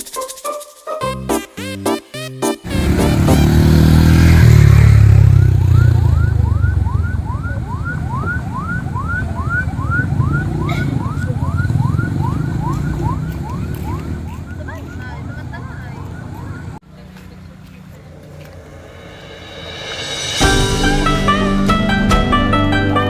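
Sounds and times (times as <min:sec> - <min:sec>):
rising electronic siren chirp: 0:02.7 - 0:15.4
vehicle engine running: 0:02.7 - 0:19.3.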